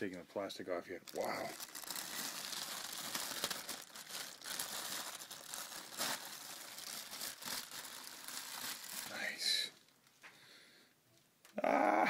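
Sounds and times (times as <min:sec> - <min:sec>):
packing material crinkling: 0:01.0 - 0:10.0.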